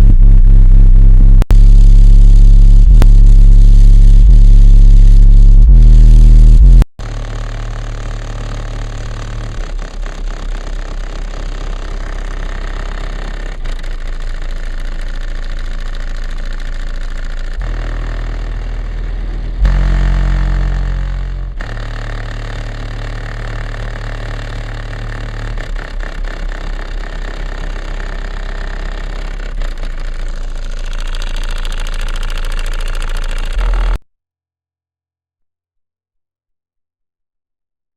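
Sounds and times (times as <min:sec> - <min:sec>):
bass-heavy music from subwoofers: 0:00.0 - 0:14.0, 0:17.4 - 0:30.6.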